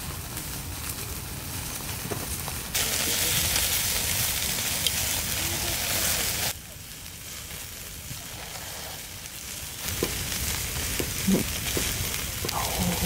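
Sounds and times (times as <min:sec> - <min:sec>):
food sizzling on a grill: 0:00.0 - 0:13.0
crackling pops: 0:06.3 - 0:13.0.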